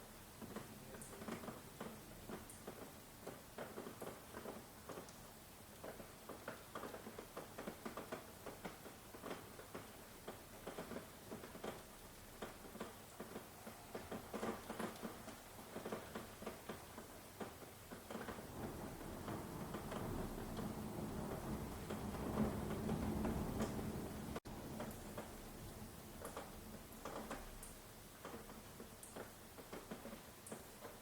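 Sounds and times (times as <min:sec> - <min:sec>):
rain drops pattering: 0:00.0 - 0:31.0
low rumble: 0:18.5 - 0:24.4.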